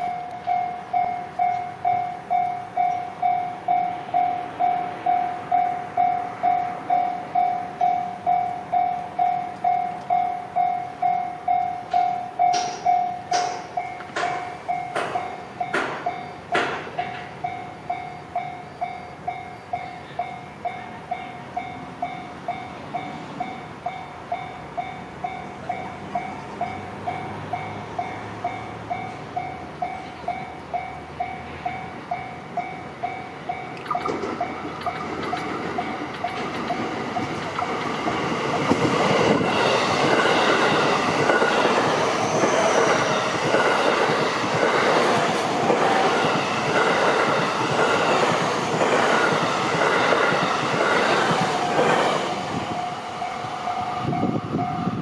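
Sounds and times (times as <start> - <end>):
level-crossing bell ringing: 0.0 - 16.5, 17.4 - 44.0, 52.5 - 55.0
train wheels clattering: 11.8 - 17.6, 33.9 - 55.0.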